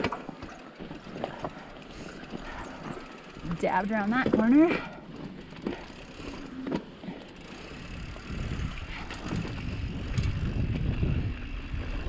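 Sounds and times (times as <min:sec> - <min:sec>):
bike clicks and knocks: 0:00.0 - 0:11.0
bike tyres rolling over dirt and rock: 0:00.0 - 0:12.0
wind on microphone: 0:07.9 - 0:12.0.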